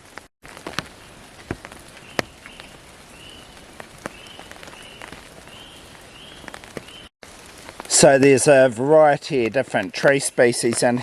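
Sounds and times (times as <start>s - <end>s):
light rain patter: 0.0s - 11.0s
sharp drip ticks: 0.6s - 7.0s.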